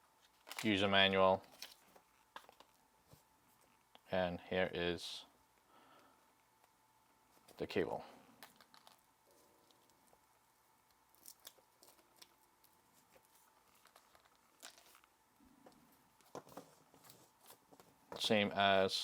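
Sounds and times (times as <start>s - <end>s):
packaging crinkling: 0.2s - 0.8s, 8.4s - 10.1s, 10.9s - 15.2s.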